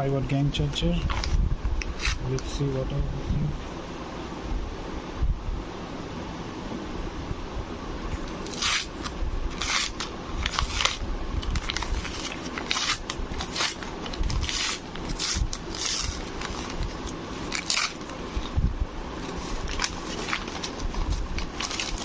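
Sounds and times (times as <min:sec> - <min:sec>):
packaging crinkling and scraping: 0:08.2 - 0:18.6, 0:19.2 - 0:22.0.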